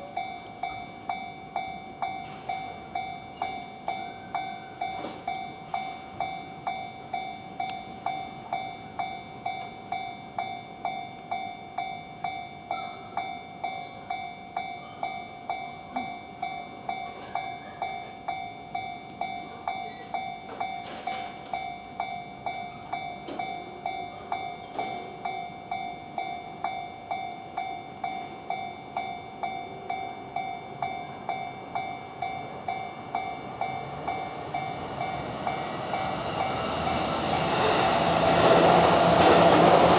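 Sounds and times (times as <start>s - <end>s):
level-crossing warning bell: 0.0s - 39.9s
train rumble: 29.4s - 39.9s.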